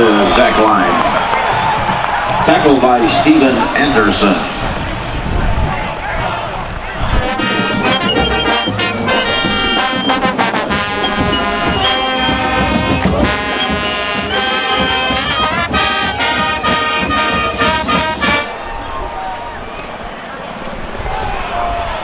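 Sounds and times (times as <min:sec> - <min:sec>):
brass band playing: 0:06.2 - 0:18.6
drum beats: 0:06.2 - 0:18.6.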